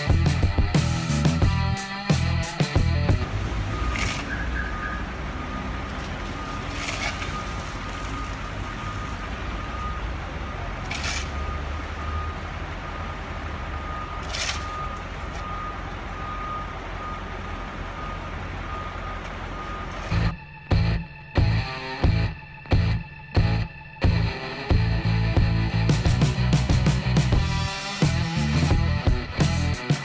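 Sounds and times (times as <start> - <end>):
diesel engine running: 0.0 - 30.0
reversing alarm beeping: 2.8 - 25.3.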